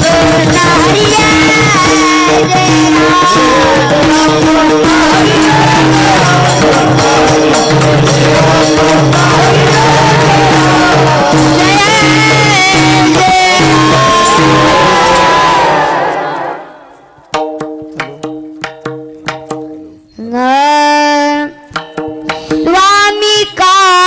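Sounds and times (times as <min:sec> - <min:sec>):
people singing devotional music: 0:00.0 - 0:17.4
hand percussion: 0:00.0 - 0:24.0.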